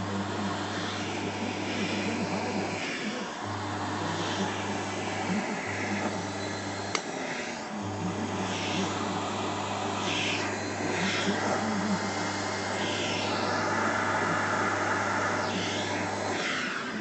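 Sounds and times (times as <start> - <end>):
vacuum cleaner humming: 0.0 - 17.0.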